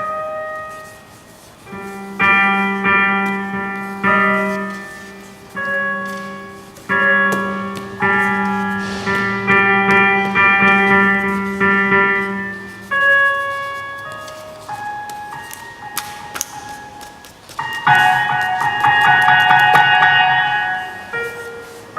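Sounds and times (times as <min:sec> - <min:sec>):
synthesizer keyboard notes: 0:00.0 - 0:21.9
low synthesizer drone: 0:05.4 - 0:13.5.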